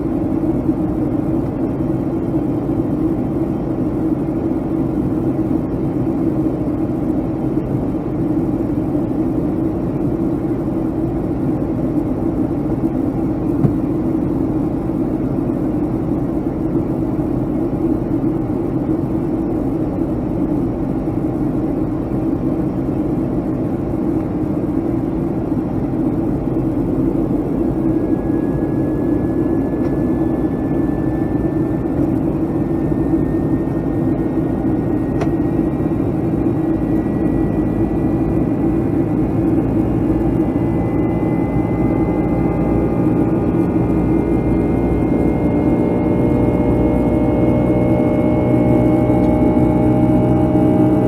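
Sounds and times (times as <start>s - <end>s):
airplane cabin engine drone: 0.0s - 51.0s.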